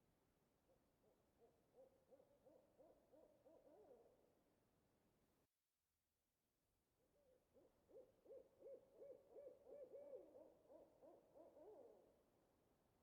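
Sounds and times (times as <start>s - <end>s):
owl hooting: 7.9s - 12.1s.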